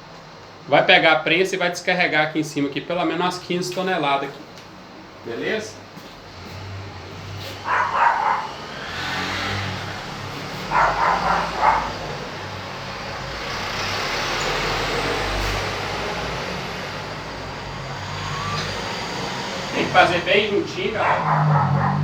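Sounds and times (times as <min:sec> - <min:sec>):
dog barking: 0:07.5 - 0:08.7, 0:10.6 - 0:12.4, 0:20.9 - 0:22.0.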